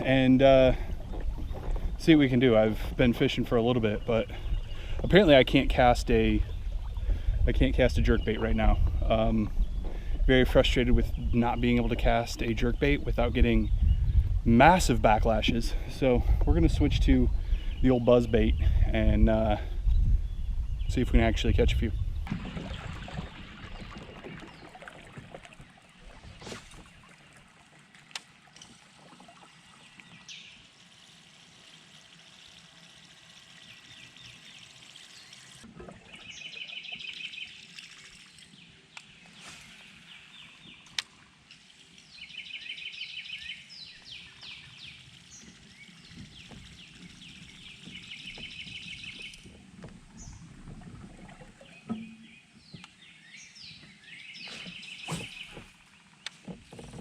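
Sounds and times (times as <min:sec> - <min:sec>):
water lapping: 0:00.0 - 0:13.3, 0:22.3 - 0:53.2, 0:53.8 - 0:57.0
songbird trilling: 0:42.0 - 0:49.4.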